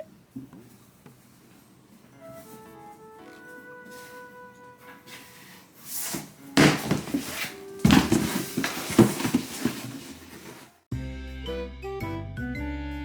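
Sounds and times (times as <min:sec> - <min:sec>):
cardboard box rustling and knocking: 0:05.9 - 0:10.8.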